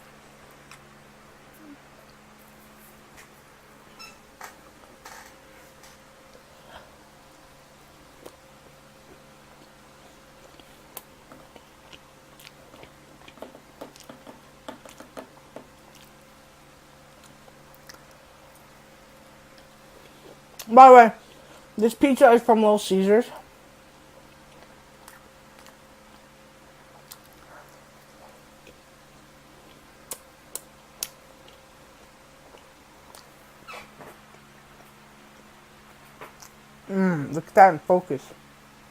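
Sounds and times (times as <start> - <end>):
low steady hum: 0.0 - 38.9
person chewing with wet mouth clicks: 10.4 - 16.2, 24.2 - 26.2, 26.9 - 28.8, 29.6 - 33.4.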